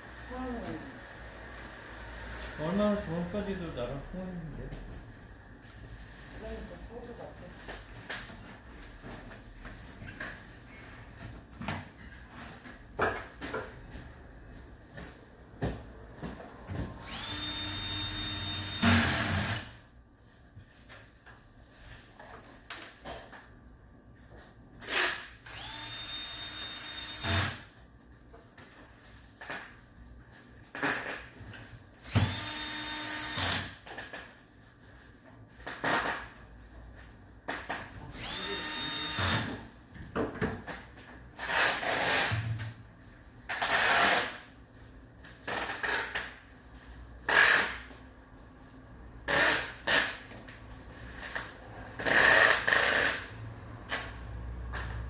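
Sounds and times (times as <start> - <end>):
power drill driving screws: 17.0 - 19.7, 24.9 - 27.6, 32.1 - 33.7, 38.1 - 39.6.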